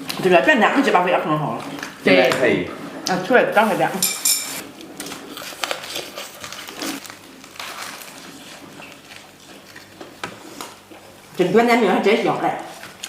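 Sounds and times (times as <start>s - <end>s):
people chewing crisp food: 4.6s - 11.6s, 12.2s - 13.0s.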